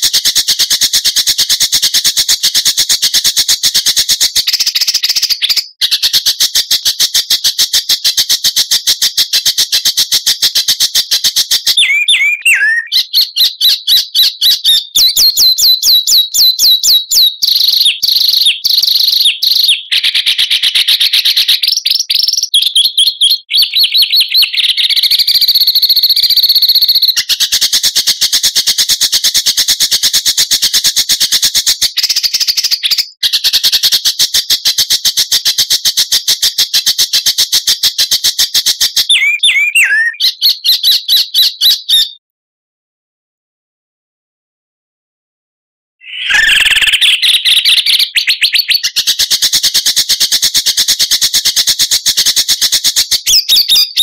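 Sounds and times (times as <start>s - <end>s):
bird chirps and trills: 11.6s - 27.6s, 38.9s - 42.2s, 46.0s - 49.4s, 53.0s - 54.0s
slurred falling whistles: 11.8s - 13.0s, 46.0s - 48.7s.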